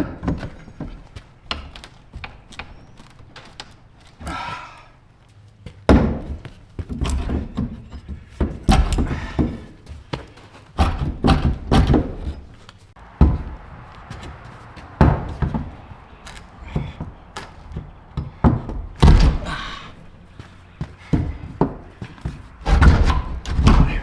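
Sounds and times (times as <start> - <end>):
heavy knocks on wood: 5.9 - 10.0, 10.8 - 12.5, 13.1 - 24.0.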